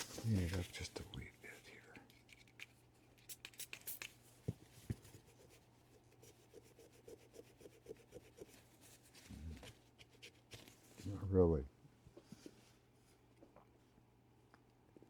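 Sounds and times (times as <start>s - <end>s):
rapid scratching strokes: 6.2s - 8.6s.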